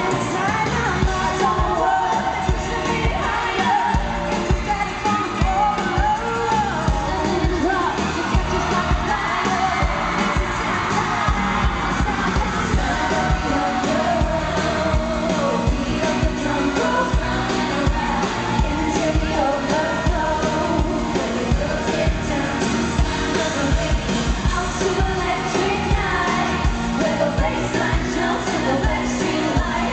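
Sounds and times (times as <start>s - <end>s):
lead vocals singing: 0.0s - 29.9s
live pop music: 0.0s - 29.9s
steady drum beat: 0.0s - 29.9s.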